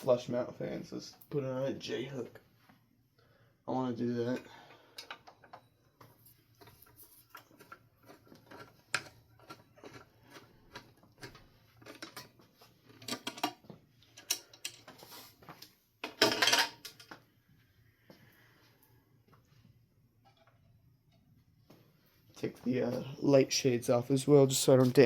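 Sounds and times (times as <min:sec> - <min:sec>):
metal and glass parts clinking: 0:16.0 - 0:17.1.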